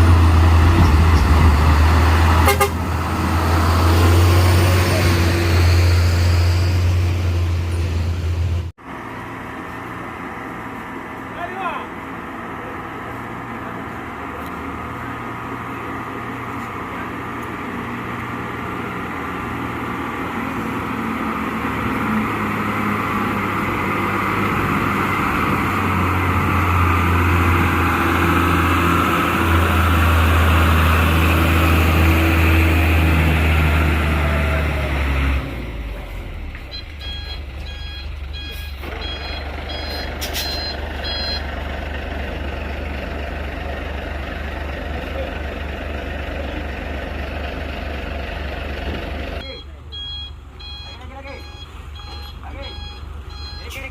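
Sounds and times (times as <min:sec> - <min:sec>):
diesel truck engine running: 0:00.0 - 0:53.9
quieter engine running: 0:07.6 - 0:53.9
electronic reversing beeper: 0:36.7 - 0:41.5, 0:49.4 - 0:53.9.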